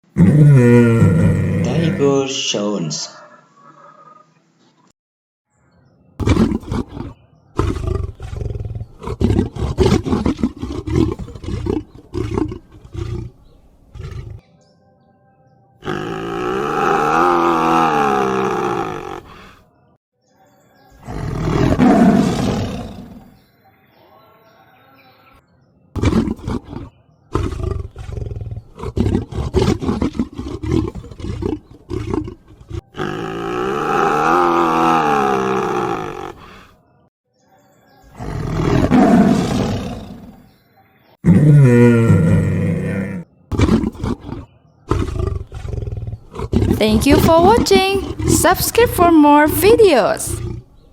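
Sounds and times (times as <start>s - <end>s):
tiger roaring: 0.0s - 2.2s, 6.2s - 14.4s, 15.8s - 19.6s, 21.0s - 23.3s, 26.0s - 36.7s, 38.1s - 40.4s, 41.2s - 50.9s
tiger growling grunts: 0.1s - 2.2s, 6.2s - 14.4s, 15.8s - 19.6s, 21.0s - 23.3s, 26.0s - 36.7s, 38.2s - 40.4s, 41.2s - 50.9s.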